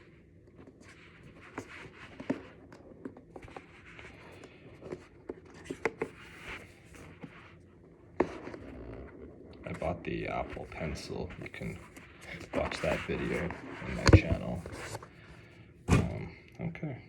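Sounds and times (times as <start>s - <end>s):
cardboard box scraping and rustling: 8.1s - 15.2s.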